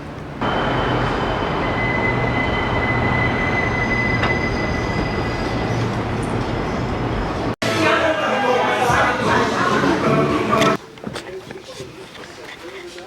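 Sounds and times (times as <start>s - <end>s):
subway train rumble and rattle: 0.0s - 7.6s
high wheel squeal: 0.5s - 7.4s.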